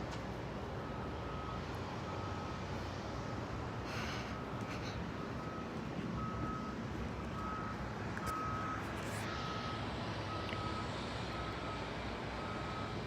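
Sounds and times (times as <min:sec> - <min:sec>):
low engine and traffic rumble: 0:00.0 - 0:13.0
vehicle backup alarm beeping: 0:00.6 - 0:13.0.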